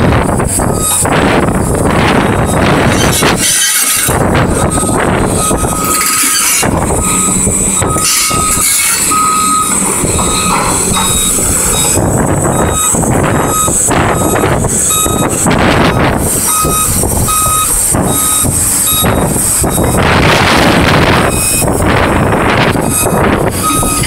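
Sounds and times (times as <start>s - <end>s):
rough machine noise: 0.0s - 24.0s
backup alarm beeping: 0.7s - 1.1s, 2.3s - 3.2s, 4.0s - 24.0s.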